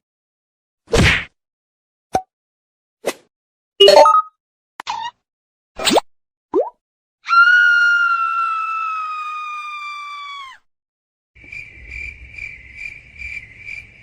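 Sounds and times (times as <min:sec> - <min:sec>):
cricket chirps: 0:11.4 - 0:14.0.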